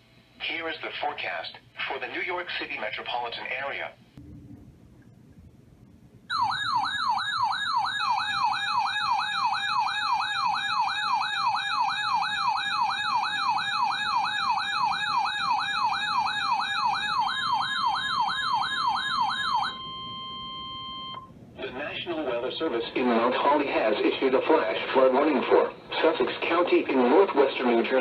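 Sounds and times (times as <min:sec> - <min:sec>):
electronic yelp siren: 0:06.3 - 0:21.3.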